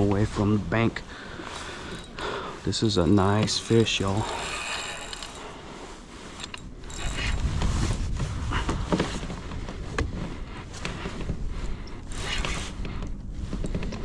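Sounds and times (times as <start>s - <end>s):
fishing reel clicking and grinding: 3.7s - 7.6s
low rumble: 5.8s - 14.0s.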